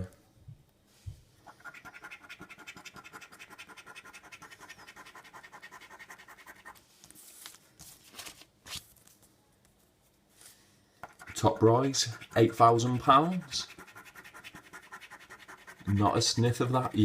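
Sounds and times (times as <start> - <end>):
scratch card being scratched: 1.5 - 6.8, 11.0 - 17.0.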